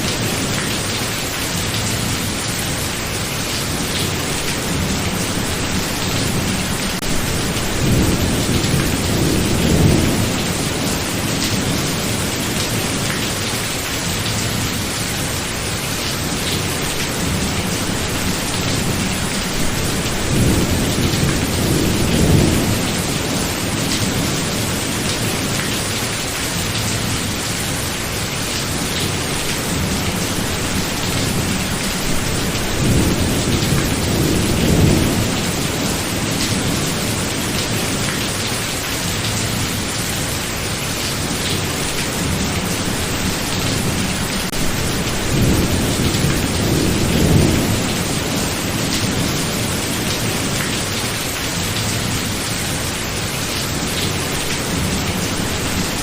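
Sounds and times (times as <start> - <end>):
steady rain falling: 0.0 - 56.0
thunder rumbling: 3.7 - 13.0, 16.4 - 25.6, 28.8 - 38.2, 42.2 - 50.7.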